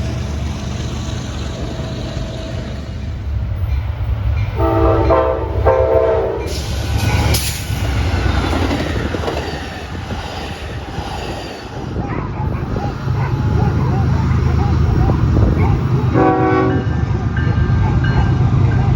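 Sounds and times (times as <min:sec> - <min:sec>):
passing train rumble: 0:00.0 - 0:18.9
locomotive air horn blasts: 0:04.5 - 0:06.6, 0:16.1 - 0:17.1.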